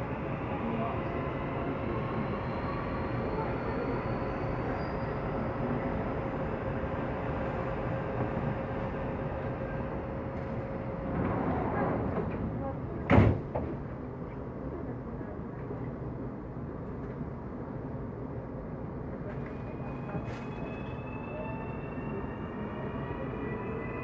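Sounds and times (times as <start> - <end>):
train running rumble: 6.7 - 16.0.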